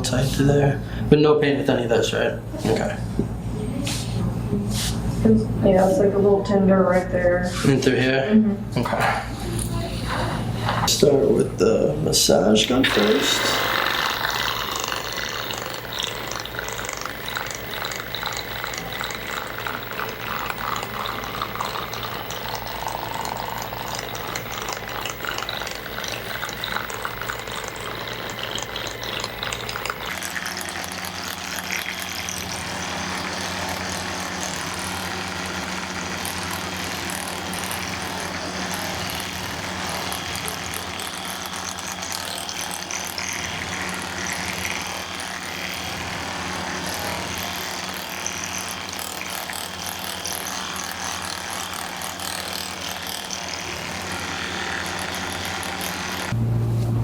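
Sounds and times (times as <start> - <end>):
massage gun pulsing: 12.2 - 57.0.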